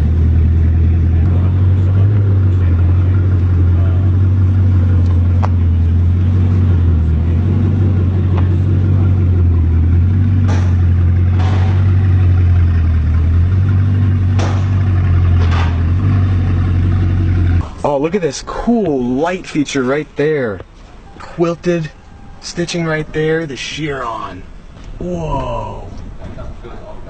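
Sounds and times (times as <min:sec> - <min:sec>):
vehicle engine idling: 0:00.0 - 0:27.0.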